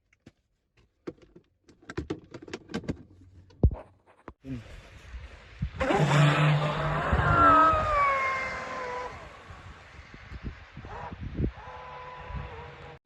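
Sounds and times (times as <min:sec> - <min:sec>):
sharp clicks and knocks: 0:00.1 - 0:04.4
electric boat motor whining: 0:05.8 - 0:13.0.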